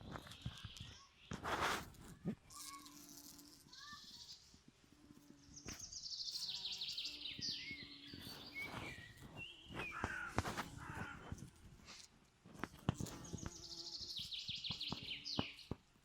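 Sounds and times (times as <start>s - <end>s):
songbird singing: 0.1s - 1.4s, 5.3s - 11.2s, 13.0s - 15.8s.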